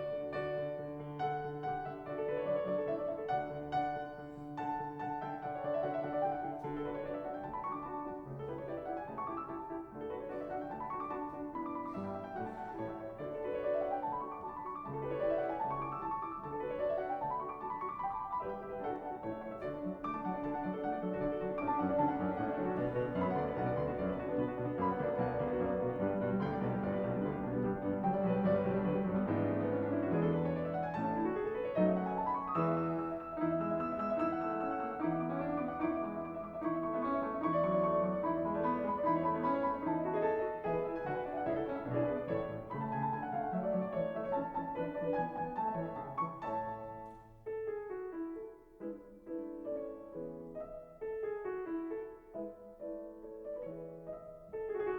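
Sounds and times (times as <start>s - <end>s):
piano music: 0.0s - 54.9s.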